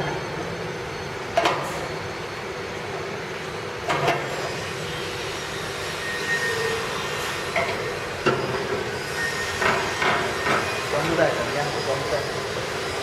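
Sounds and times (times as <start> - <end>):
grinding machine running: 0.0 - 13.0.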